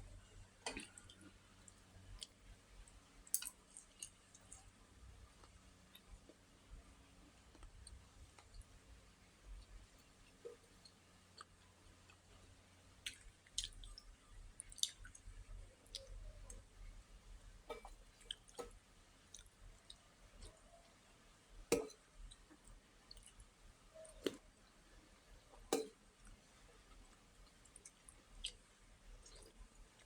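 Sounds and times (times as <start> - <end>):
wet mouth clicks and chewing: 0.7 - 6.4, 13.0 - 16.6, 21.7 - 24.4, 27.4 - 29.6.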